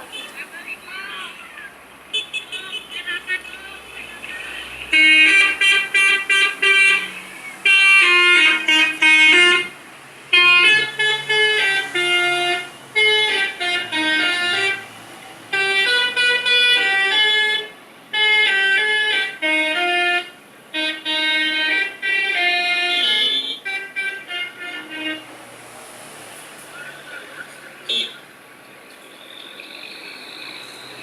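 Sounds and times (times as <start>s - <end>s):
musical bus air horn: 4.9s - 25.4s.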